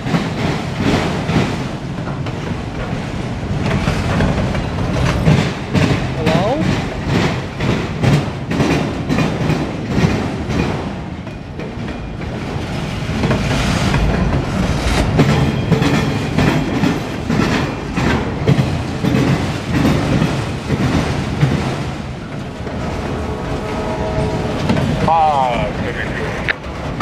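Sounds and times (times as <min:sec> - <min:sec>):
freight train rumble: 0:00.0 - 0:27.0
wheels clacking over rails: 0:00.0 - 0:27.0.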